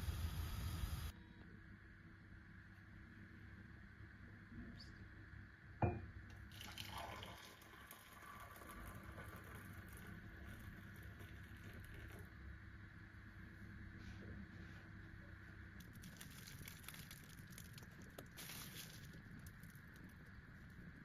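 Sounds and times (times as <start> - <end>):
liquid being poured: 6.5 - 12.3, 15.8 - 20.3.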